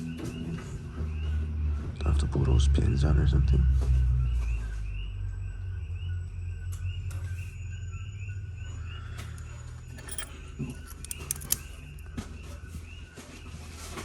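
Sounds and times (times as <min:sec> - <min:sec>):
crickets chirping: 0:04.2 - 0:13.0
padlock clicks: 0:09.3 - 0:12.1.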